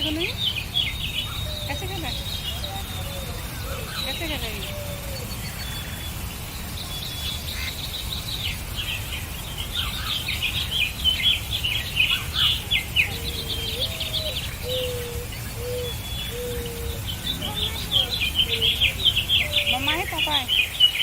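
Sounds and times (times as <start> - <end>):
small birds chirping: 0.0 - 21.0
short low bird calls: 9.0 - 21.0.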